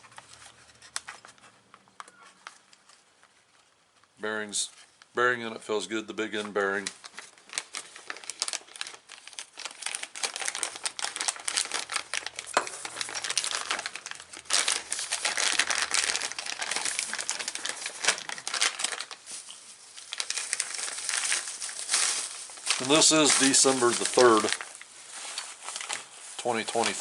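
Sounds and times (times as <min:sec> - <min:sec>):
plastic packaging crinkling: 0:05.9 - 0:27.0.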